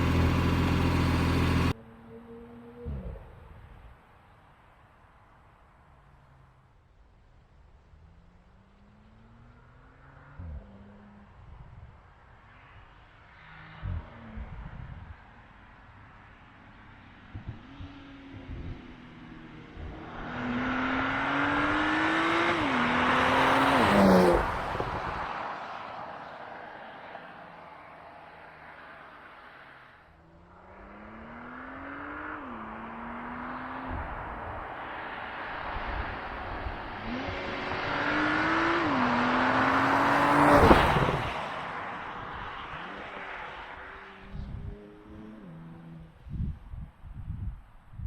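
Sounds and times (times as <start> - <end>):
car engine accelerating hard: 0.0 - 1.8, 17.3 - 26.2, 30.5 - 46.2
car passing by: 9.0 - 46.4.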